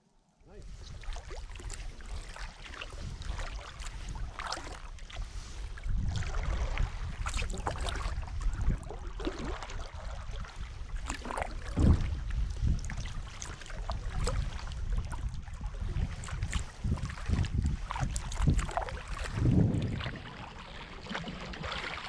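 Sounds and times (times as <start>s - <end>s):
wind rumble on microphone: 0.5s - 22.0s
kayak paddle splashing water: 0.7s - 22.0s
thump: 11.7s - 12.1s.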